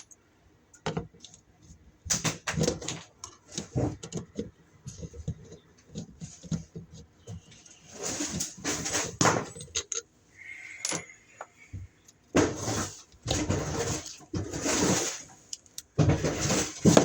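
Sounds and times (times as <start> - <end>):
rustling and scraping: 1.0 - 10.1, 10.9 - 17.0
clinks of small metal parts: 9.4 - 10.1, 10.8 - 11.2.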